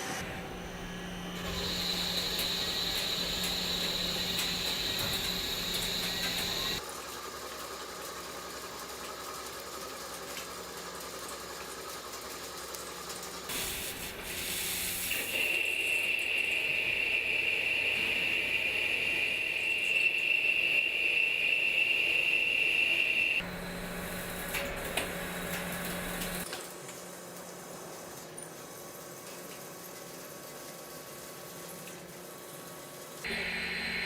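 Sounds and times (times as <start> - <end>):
high-pitched cutting whine: 0.0 - 6.8, 15.2 - 23.5
machine hum: 0.0 - 6.8, 33.3 - 34.0.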